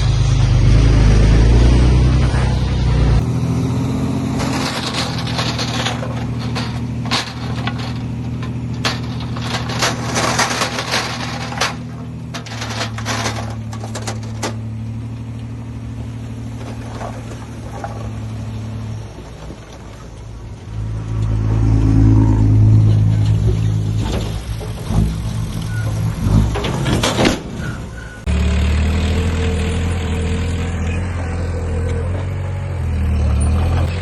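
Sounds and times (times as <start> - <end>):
diesel engine running: 0.0 - 34.0
sharp cracks and clatter: 4.4 - 14.6.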